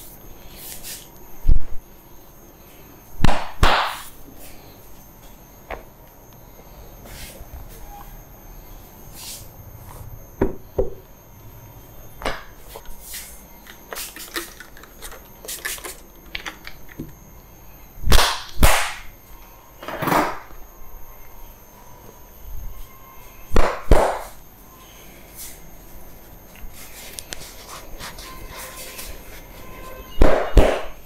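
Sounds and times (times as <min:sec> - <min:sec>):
hand slaps and claps: 0:03.3 - 0:04.1.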